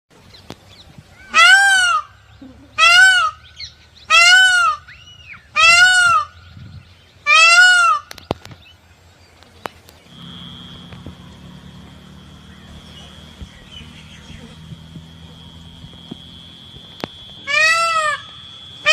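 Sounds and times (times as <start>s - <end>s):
peacock honking calls: 1.2s - 6.4s, 7.2s - 8.2s, 10.1s - 18.9s.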